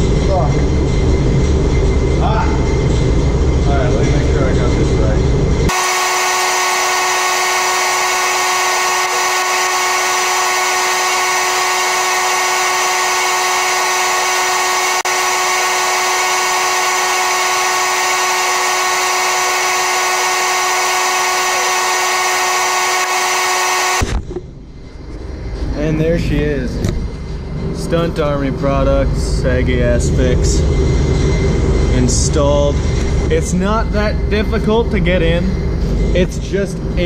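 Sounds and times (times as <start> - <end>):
electric air compressor running: 5.7 - 24.2.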